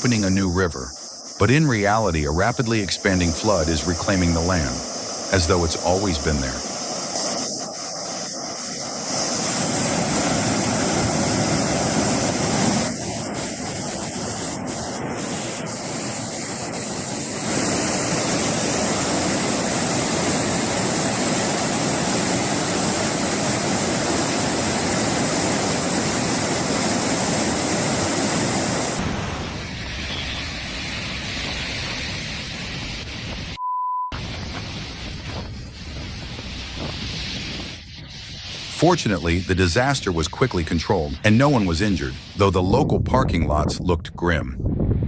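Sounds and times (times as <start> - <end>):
floodwater rushing: 1.4 - 33.4.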